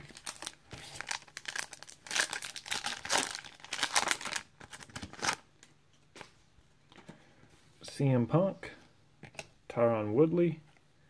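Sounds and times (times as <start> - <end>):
plastic wrapper crumpling and tearing: 0.0 - 5.7.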